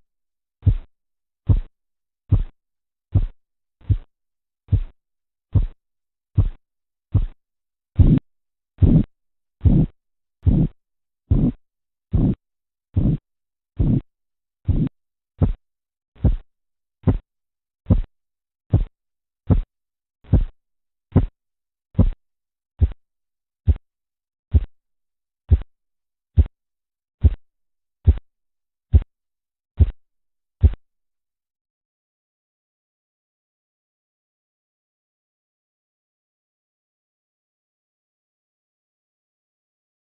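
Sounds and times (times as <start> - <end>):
pulse thumps through stethoscope: 0.6 - 0.9, 1.5 - 1.7, 2.3 - 4.1, 4.7 - 7.4, 8.0 - 8.2, 8.8 - 12.4, 13.0 - 13.2, 13.8 - 15.6, 16.2 - 17.3, 17.9 - 18.1, 18.7 - 18.9, 19.5 - 21.4, 22.0 - 22.2, 22.8 - 23.0, 24.5 - 24.7, 25.5 - 25.7, 28.0 - 28.2, 29.8 - 30.0.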